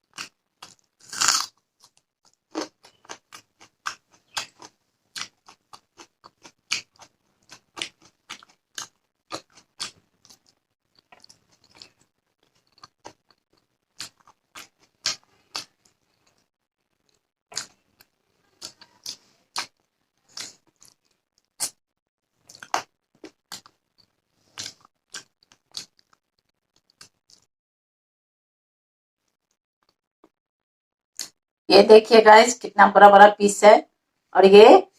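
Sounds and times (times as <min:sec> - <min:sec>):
wet chewing mouth clicks: 0:00.0 - 0:21.8, 0:22.4 - 0:27.5.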